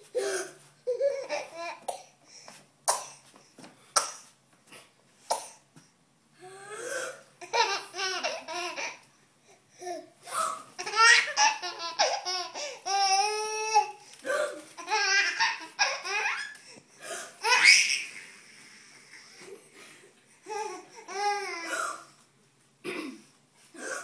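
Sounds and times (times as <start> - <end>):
baby laughing: 7.4 - 9.0, 10.8 - 13.9, 14.8 - 16.6, 17.4 - 18.2.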